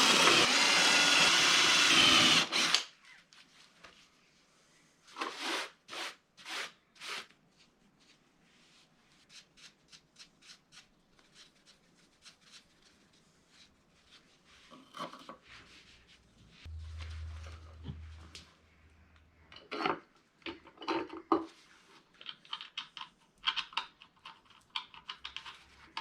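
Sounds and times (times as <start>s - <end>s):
low steady hum: 16.5s - 19.6s.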